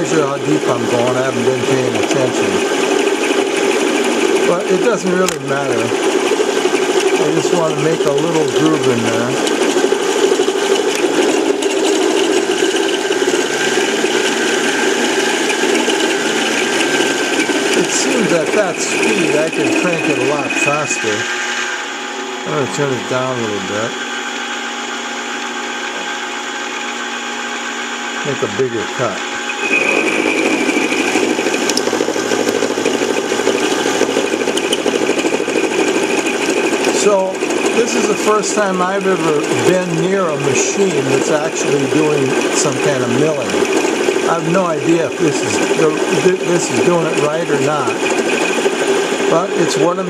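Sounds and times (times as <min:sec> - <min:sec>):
cutter rattling: 0:00.0 - 0:21.5, 0:28.2 - 0:50.0
high whine: 0:00.0 - 0:50.0
lathe motor and gears running: 0:00.0 - 0:50.0.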